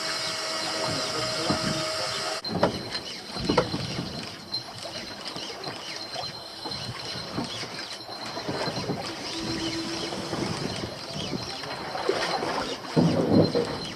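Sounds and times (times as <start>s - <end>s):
small motor whirring: 0.0s - 12.0s.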